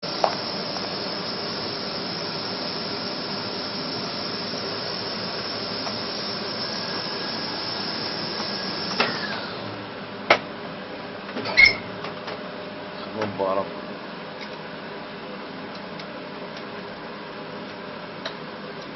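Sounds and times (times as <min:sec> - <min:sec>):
small machine hissing and whining: 0:00.0 - 0:10.0.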